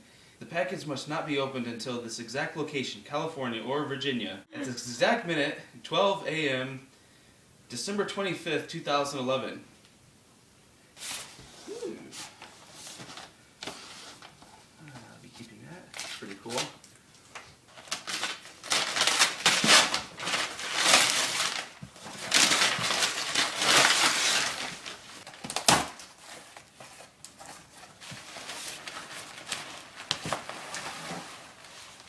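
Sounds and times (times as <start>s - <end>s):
wrapping paper tearing and rustling: 15.8s - 32.0s.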